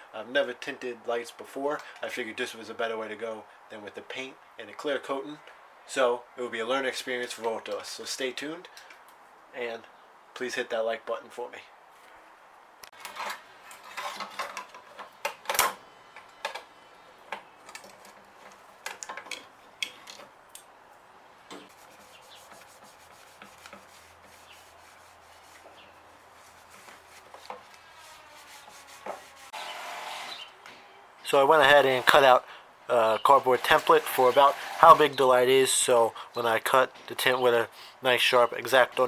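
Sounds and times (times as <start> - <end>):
rubbing and scraping: 12.9 - 15.0, 21.6 - 29.6.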